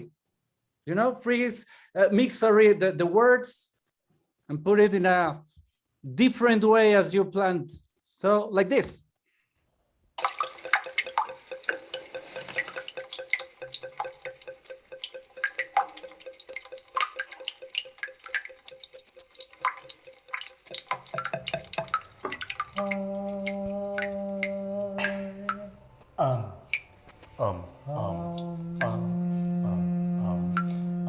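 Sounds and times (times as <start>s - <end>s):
water dripping from a tap: 10.2s - 26.0s, 26.6s - 27.1s, 28.2s - 29.0s, 30.4s - 31.0s
faint steady tone: 10.4s - 21.5s.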